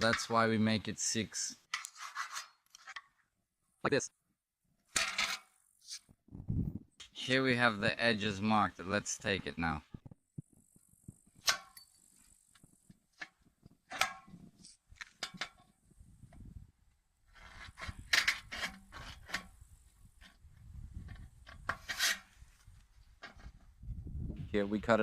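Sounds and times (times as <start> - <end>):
metal strip being handled: 1.7 - 3.1.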